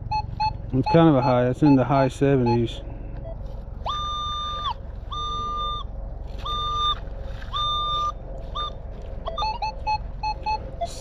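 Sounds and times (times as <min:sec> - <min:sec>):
metal detector beeping: 0:00.0 - 0:11.0.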